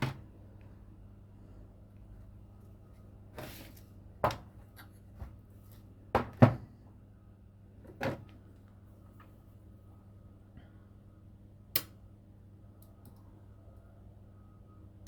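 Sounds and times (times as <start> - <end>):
faint steady hum: 0.0 - 15.0
objects knocking on workbench: 6.1 - 6.7.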